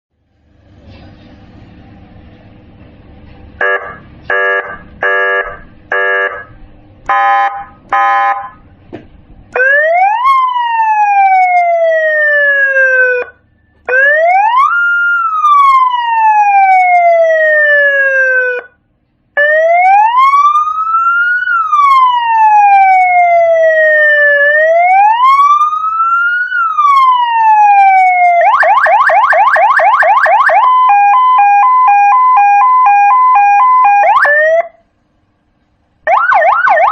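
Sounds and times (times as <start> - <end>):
siren wailing up and down: 3.6 - 6.5, 7.1 - 8.6, 9.5 - 18.8, 19.4 - 34.8, 36.0 - 36.9
rapid siren yelp: 9.5 - 18.8, 19.4 - 34.8, 36.0 - 36.9.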